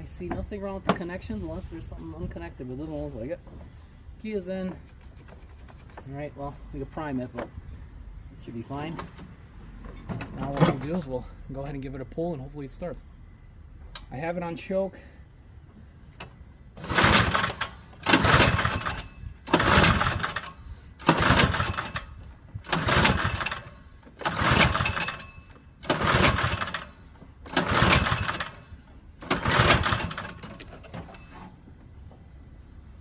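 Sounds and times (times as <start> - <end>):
recoil starter pulls: 16.1 - 31.6
engine turning over: 16.7 - 31.4.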